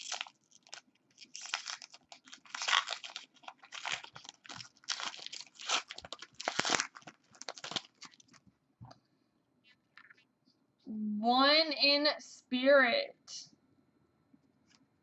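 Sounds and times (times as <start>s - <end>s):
trading cards rustling: 0.0s - 8.4s.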